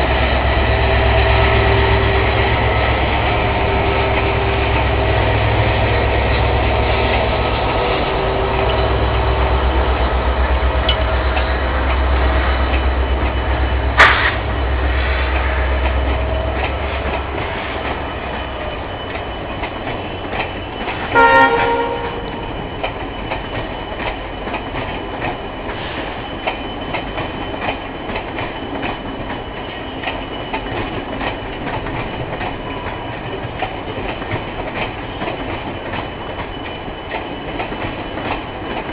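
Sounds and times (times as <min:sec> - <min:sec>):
diesel locomotive engine rumbling: 0:00.0 - 0:38.9
train wheels clickety-clack: 0:00.0 - 0:38.9
train horn blast: 0:00.7 - 0:05.5, 0:21.1 - 0:22.4.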